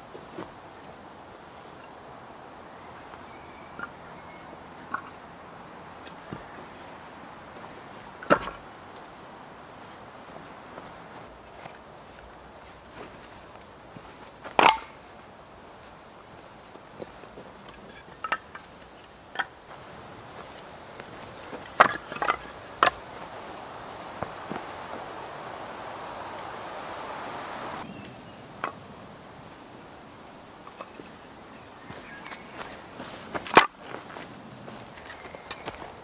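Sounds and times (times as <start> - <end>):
footsteps crunching on twigs and leaves: 6.0 - 19.1, 19.7 - 27.9, 30.6 - 36.0
twigs snapping: 19.4 - 27.8.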